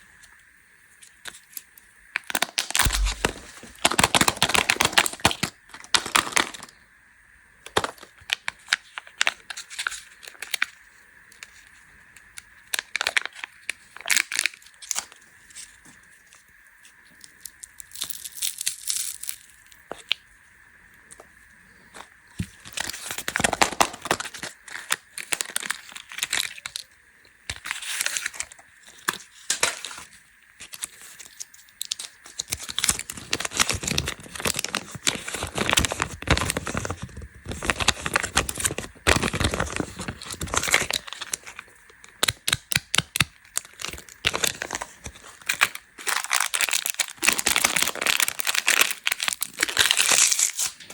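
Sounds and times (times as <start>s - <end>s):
plastic wrappers crinkling: 2.6s - 6.7s, 12.7s - 15.8s, 22.6s - 26.9s, 27.5s - 50.9s.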